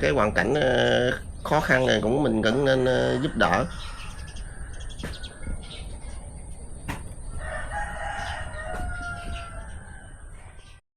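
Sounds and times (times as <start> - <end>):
rooster crowing: 2.2 - 5.8, 7.2 - 10.7.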